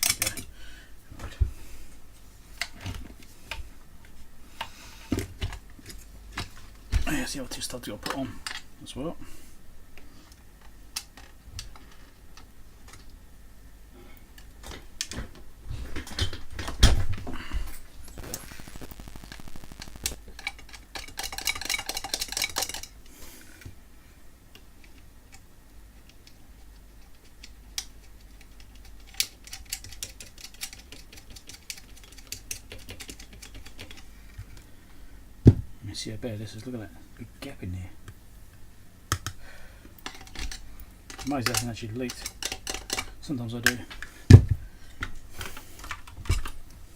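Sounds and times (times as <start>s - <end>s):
small metal parts clicking: 0.0s - 0.5s, 20.3s - 23.0s, 27.0s - 34.0s, 40.0s - 43.2s.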